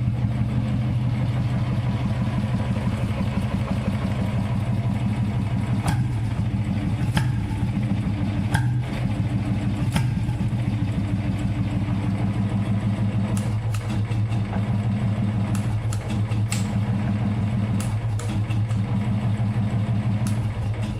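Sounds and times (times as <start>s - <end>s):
motorcycle engine idling: 0.0s - 20.9s
sharp clicks: 13.3s - 14.5s, 15.5s - 16.8s, 17.8s - 18.8s.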